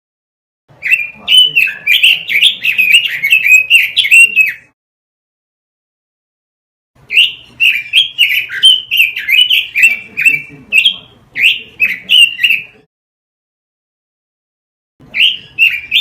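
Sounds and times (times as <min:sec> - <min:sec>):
bird singing whistled notes: 0:00.8 - 0:04.7, 0:07.1 - 0:12.8, 0:15.1 - 0:16.0.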